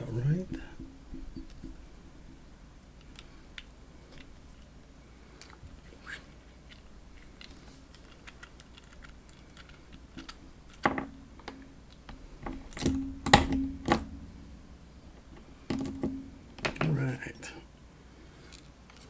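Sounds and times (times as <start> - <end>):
metal padlock parts clicking: 5.4 - 17.1.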